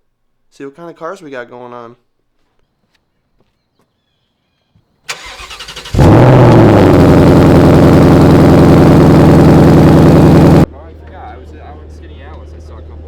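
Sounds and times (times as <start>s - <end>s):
car starter cranking: 5.1s - 7.8s
car engine idling: 5.1s - 10.7s.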